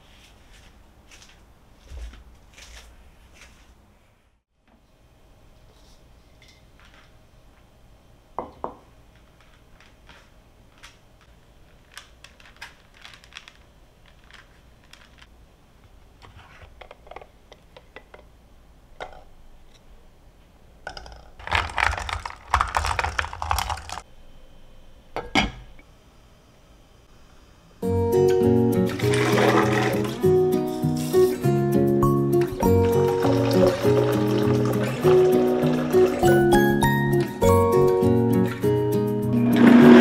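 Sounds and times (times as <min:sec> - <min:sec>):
clattering and rustling: 0:09.2 - 0:15.3
kitchen items clicking and knocking: 0:20.9 - 0:24.0.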